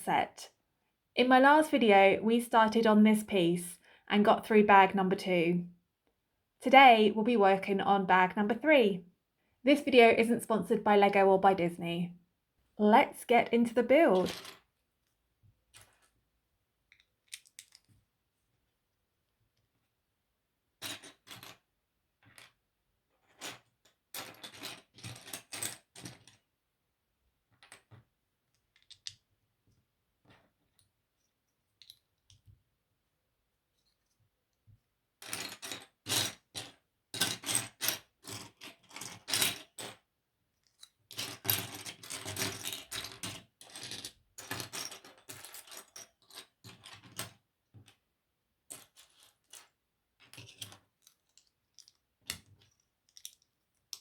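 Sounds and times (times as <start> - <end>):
plastic toy bricks clattering: 16.9 - 17.9.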